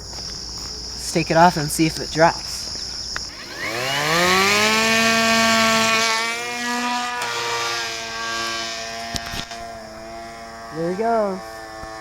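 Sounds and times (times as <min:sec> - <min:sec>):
model plane motor whining: 0:03.1 - 0:12.0.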